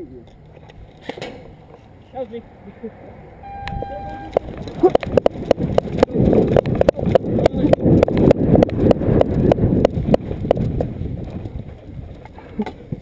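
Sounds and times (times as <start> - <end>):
wind rumbling on microphone: 3.4 - 13.0.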